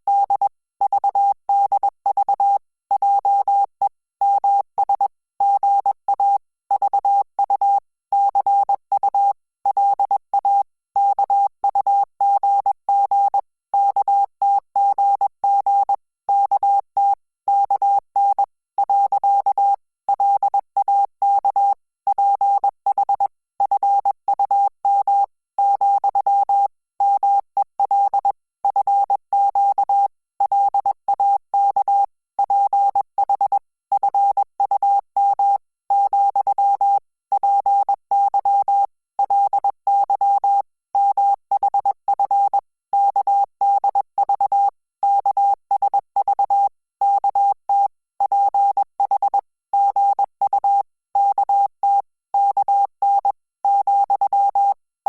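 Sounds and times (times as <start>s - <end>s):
morse code beeps: 47.1s - 54.8s.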